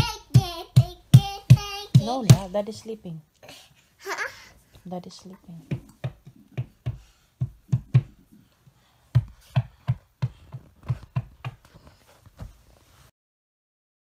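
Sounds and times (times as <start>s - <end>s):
soft irregular thumps and taps: 0.0s - 2.6s, 4.7s - 13.0s.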